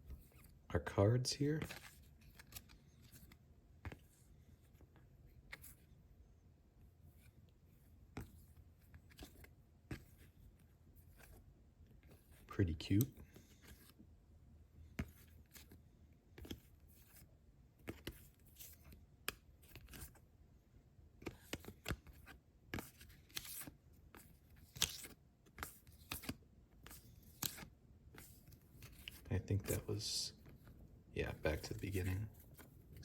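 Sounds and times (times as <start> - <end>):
paper cards clicking and rustling: 1.6 - 5.8, 8.1 - 10.4, 14.9 - 20.2, 21.2 - 30.7.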